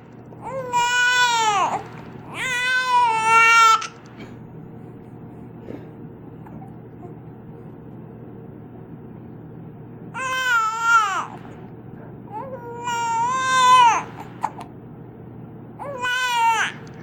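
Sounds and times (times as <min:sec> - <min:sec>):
baby crying: 0:00.4 - 0:04.0, 0:10.2 - 0:11.4, 0:12.3 - 0:14.6, 0:15.8 - 0:16.9.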